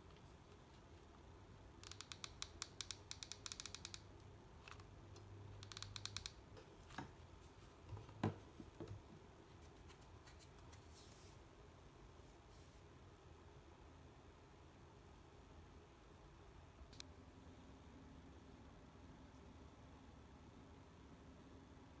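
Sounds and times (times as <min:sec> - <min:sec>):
sharp snipping-like clicks: 0:01.8 - 0:04.1, 0:05.6 - 0:06.4.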